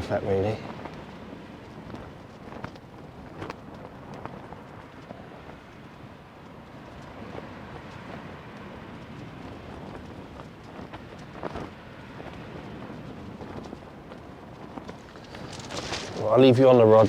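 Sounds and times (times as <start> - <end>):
waves washing over pebble beach: 14.9 - 17.0
stones clattering: 15.0 - 17.0.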